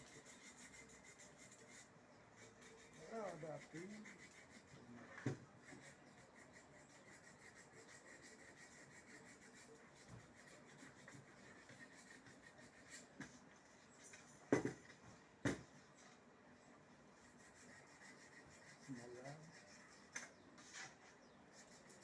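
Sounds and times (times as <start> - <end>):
handling noise with rubbing: 19.7 - 21.8.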